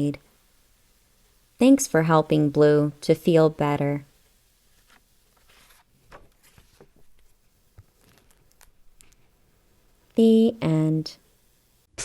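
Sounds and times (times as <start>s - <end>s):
paper book rustling: 4.7s - 9.3s.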